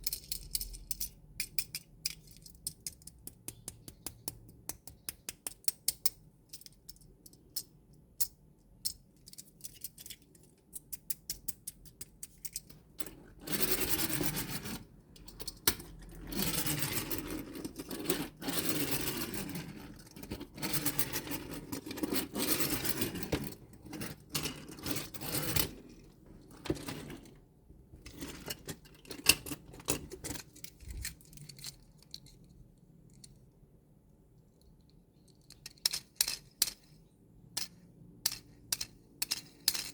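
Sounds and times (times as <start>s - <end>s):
clinks of toys: 0.0s - 3.2s, 35.4s - 39.9s
toy packaging clicks and taps: 0.0s - 12.7s
rubbing and scraping: 16.0s - 27.4s.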